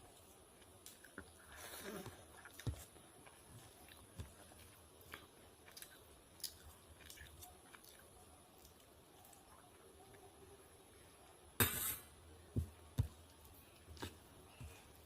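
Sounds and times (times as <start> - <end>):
chewing and mouth sounds: 0.1 - 10.2.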